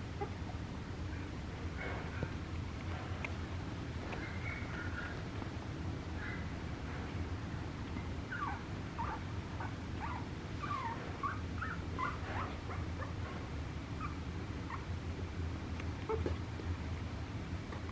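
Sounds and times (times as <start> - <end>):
steady low hum: 0.0 - 17.9
puppy whimpering: 0.1 - 0.6, 8.2 - 13.2, 14.0 - 14.9, 16.0 - 16.4.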